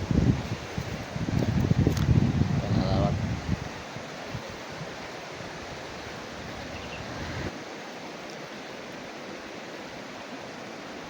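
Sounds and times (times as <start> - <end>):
wind buffeting microphone: 0.0 - 7.6
river current rushing: 0.0 - 11.0.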